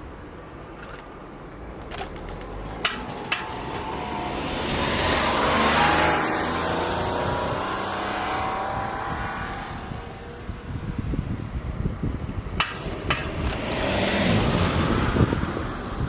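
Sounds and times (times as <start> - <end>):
vehicle passing by: 2.2 - 11.4, 12.8 - 16.0.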